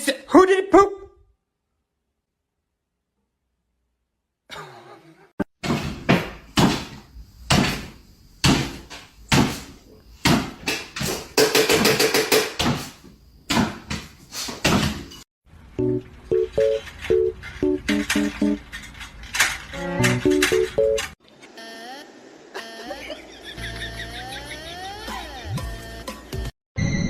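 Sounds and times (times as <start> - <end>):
loud sharp knocks: 5.6 - 12.9
music: 15.8 - 18.6, 19.8 - 21.1, 24.8 - 26.5.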